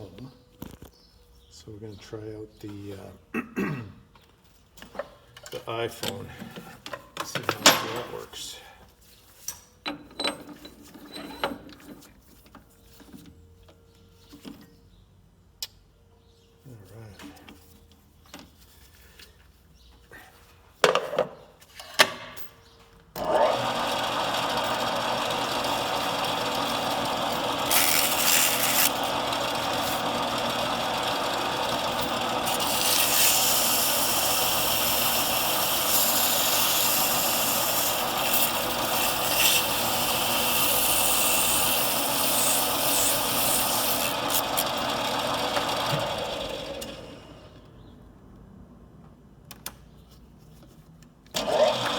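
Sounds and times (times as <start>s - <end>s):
power tool motor running: 23.2s - 47.6s, 51.4s - 51.9s.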